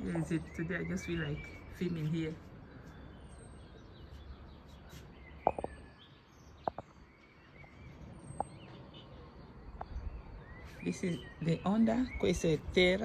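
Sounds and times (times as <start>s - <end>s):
distant bird chirps: 0.0s - 13.0s
wind rumble on microphone: 9.7s - 10.6s.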